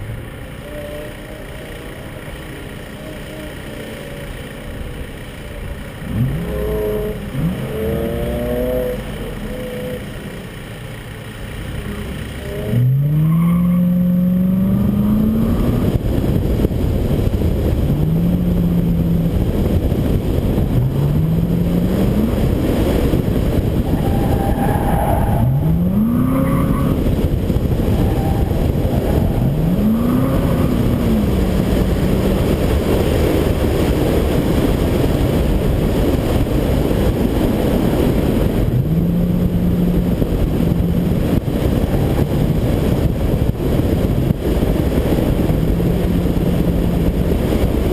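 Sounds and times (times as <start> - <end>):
truck engine revving: 0.0 - 47.9
wind on microphone: 13.8 - 47.9.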